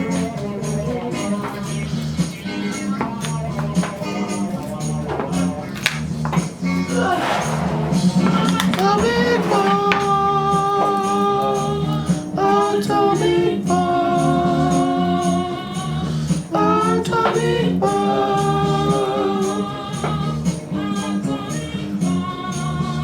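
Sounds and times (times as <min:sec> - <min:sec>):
low accompaniment: 0:06.3 - 0:11.8.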